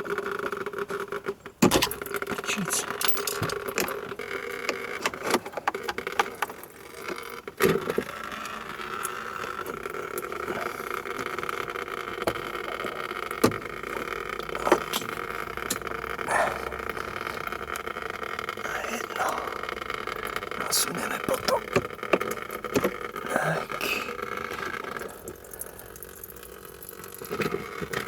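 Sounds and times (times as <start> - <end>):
background hum: 0.0 - 28.0.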